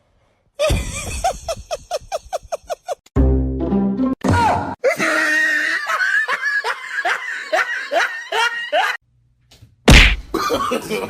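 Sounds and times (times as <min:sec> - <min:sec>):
person laughing: 0:00.6 - 0:03.1, 0:04.9 - 0:09.0.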